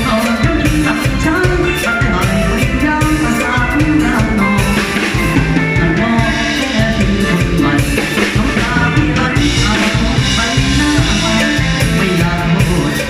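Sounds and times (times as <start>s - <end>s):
drum kit beat: 0.0s - 13.0s
live band playing: 0.0s - 13.0s.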